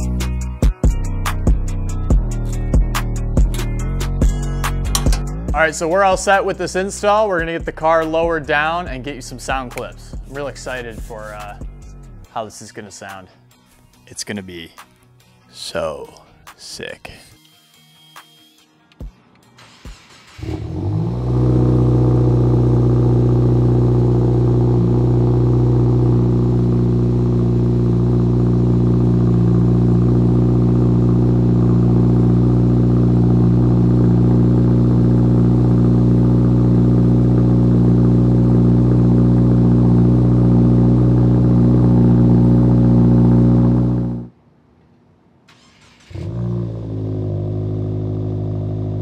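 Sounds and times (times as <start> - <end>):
car engine starting and idling: 3.4 - 5.8, 19.6 - 44.3, 45.5 - 49.0.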